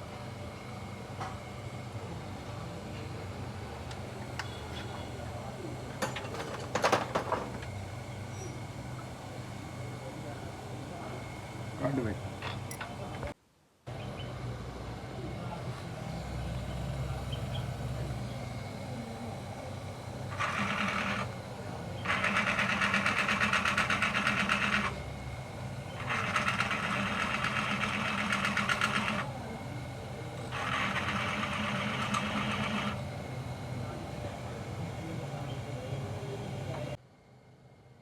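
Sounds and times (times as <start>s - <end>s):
fast mechanical clattering: 5.9s - 7.7s, 20.3s - 21.4s, 22.0s - 25.0s, 25.9s - 29.3s, 30.5s - 33.0s.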